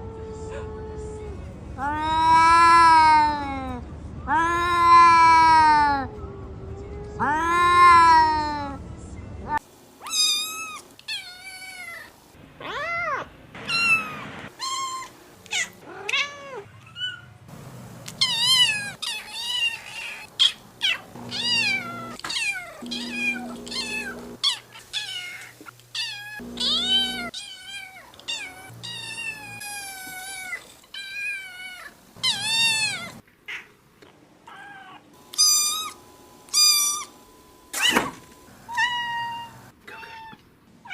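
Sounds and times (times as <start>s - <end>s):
cats meowing: 10.0s - 17.3s, 18.2s - 33.8s, 34.4s - 37.1s, 37.8s - 40.9s.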